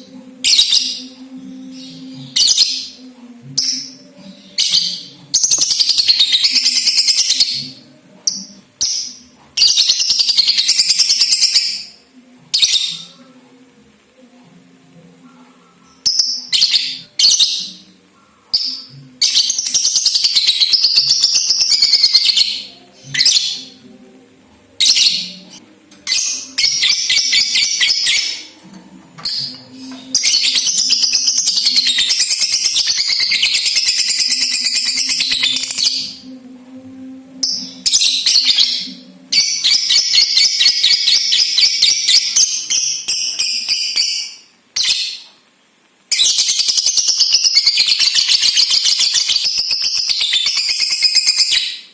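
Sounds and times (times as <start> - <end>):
lovebird chattering and trilling: 26.0 - 28.6.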